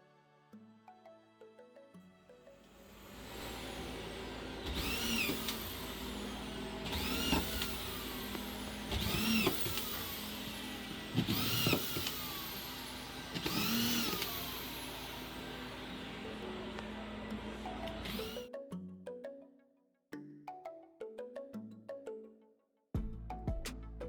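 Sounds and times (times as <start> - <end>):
power tool motor whirring: 2.6 - 18.4.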